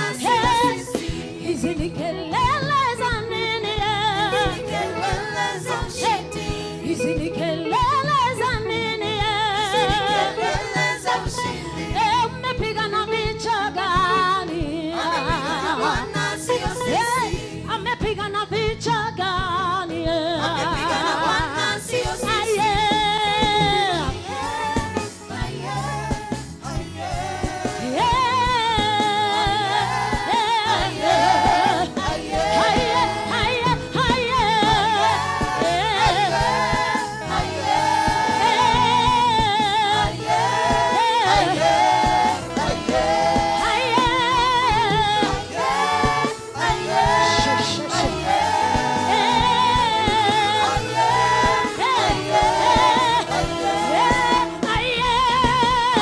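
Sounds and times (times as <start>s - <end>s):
band with steady beat: 0.0s - 56.0s
voices singing praise song: 0.0s - 56.0s.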